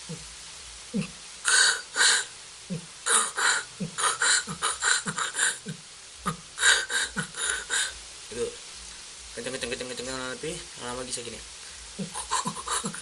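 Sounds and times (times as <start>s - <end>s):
person beatboxing: 0.0s - 0.3s, 0.9s - 7.9s, 12.0s - 13.0s.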